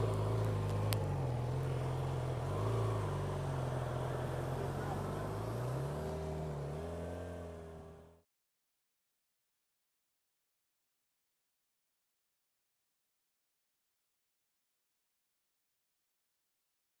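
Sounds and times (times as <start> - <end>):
vehicle engine revving: 0.0 - 8.2.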